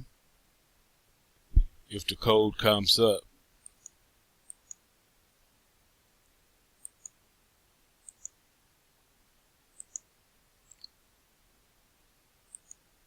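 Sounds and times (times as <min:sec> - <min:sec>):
computer mouse button clicking: 0:08.0 - 0:08.4, 0:09.8 - 0:10.0, 0:12.5 - 0:12.8.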